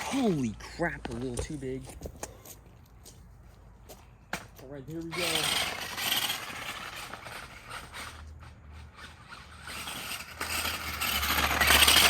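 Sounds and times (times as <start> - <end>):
tyres in mud: 4.4 - 12.0
electric motor whirring: 8.9 - 12.0.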